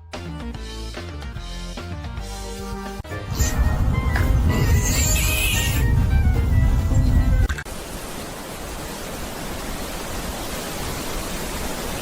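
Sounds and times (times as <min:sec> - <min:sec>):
background music: 0:00.0 - 0:07.6.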